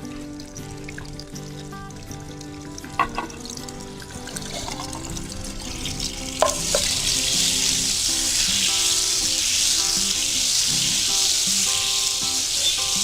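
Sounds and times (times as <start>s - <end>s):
butter sizzling in frying pan: 0.0s - 13.0s.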